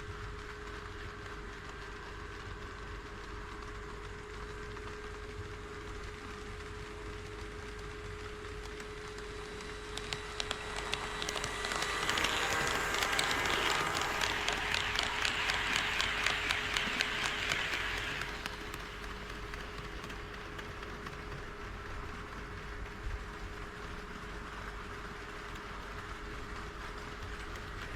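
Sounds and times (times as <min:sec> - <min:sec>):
model train wheels clicking: 0:06.9 - 0:27.9.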